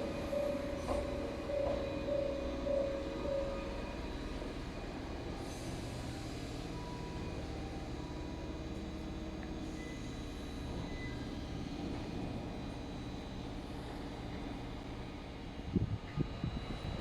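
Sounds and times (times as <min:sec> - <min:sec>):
electric train humming: 0:00.0 - 0:17.0.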